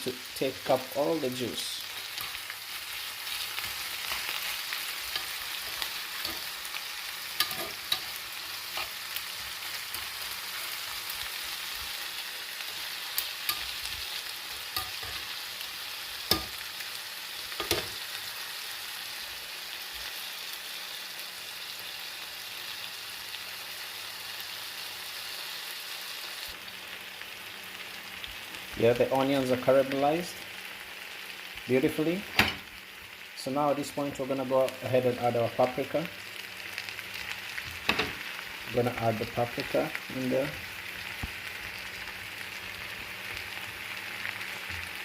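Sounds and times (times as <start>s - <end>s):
chicken and onions sizzling in a pan: 0.0s - 45.0s.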